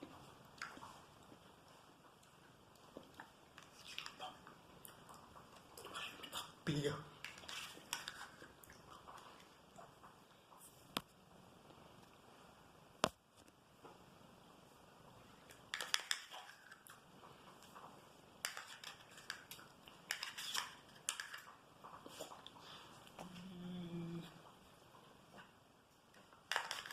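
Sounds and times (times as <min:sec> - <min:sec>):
spoon scraping yogurt pot: 0:07.2 - 0:08.6, 0:18.4 - 0:21.5.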